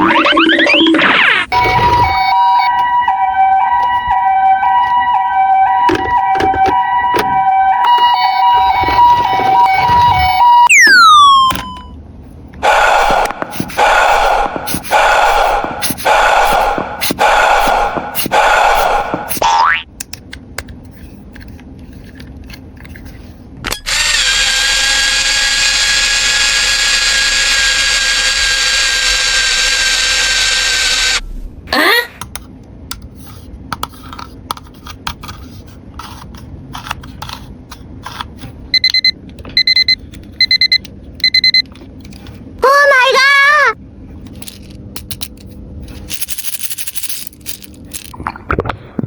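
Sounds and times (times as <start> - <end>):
short electronic beeps: 7.9 - 12.0, 38.7 - 41.6
toy buzzing steadily: 12.6 - 19.8, 23.8 - 31.2, 44.4 - 48.1.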